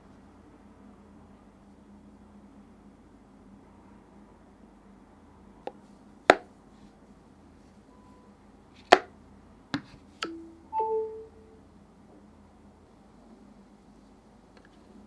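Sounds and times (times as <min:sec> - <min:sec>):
brief steady tones: 0:10.2 - 0:11.6.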